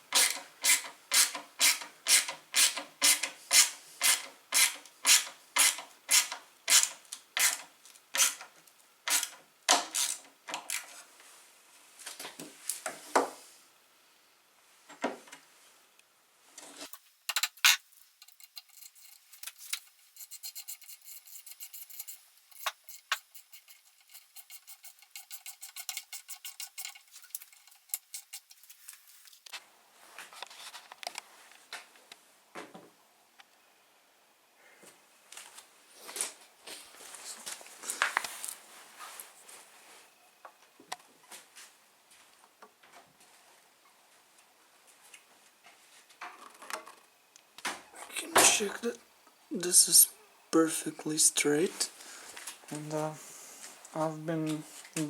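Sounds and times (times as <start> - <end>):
hand tool scraping strokes: 0.0 - 8.5, 18.3 - 29.1.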